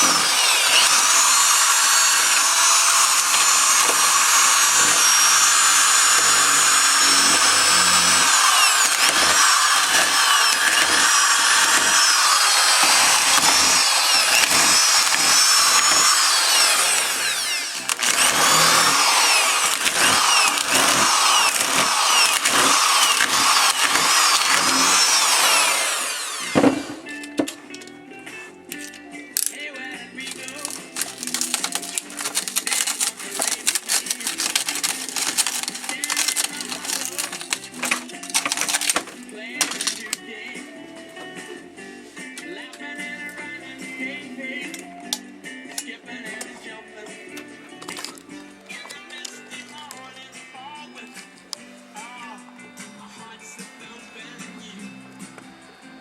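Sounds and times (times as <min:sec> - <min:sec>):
electric hammer drill running: 0:00.0 - 0:27.1, 0:30.2 - 0:40.1.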